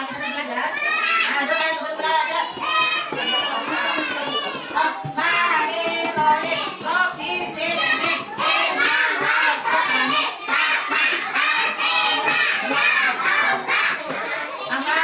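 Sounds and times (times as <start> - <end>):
young children singing: 2.0 - 15.0.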